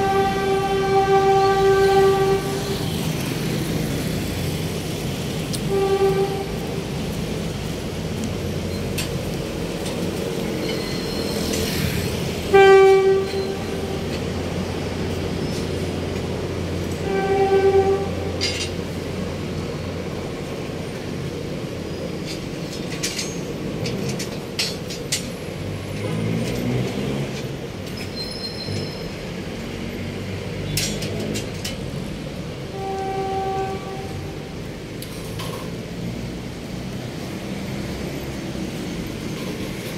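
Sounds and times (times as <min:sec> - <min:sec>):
horn blasts: 0:00.0 - 0:03.1, 0:05.6 - 0:06.9, 0:12.5 - 0:14.1, 0:16.9 - 0:18.6, 0:32.7 - 0:34.5.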